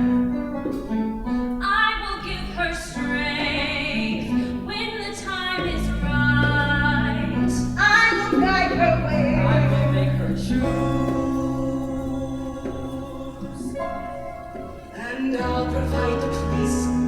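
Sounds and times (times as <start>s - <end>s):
instrumental accompaniment: 0.0s - 17.0s
person singing long notes: 5.6s - 17.0s.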